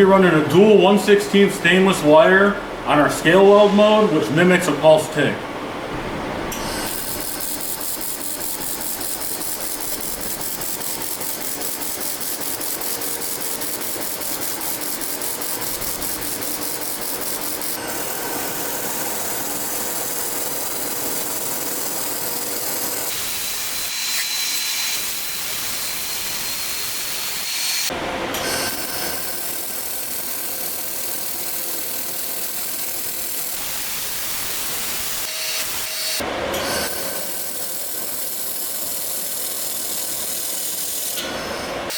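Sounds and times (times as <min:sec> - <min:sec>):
laser welder pulsing hiss: 0:06.8 - 0:24.0, 0:24.7 - 0:36.2.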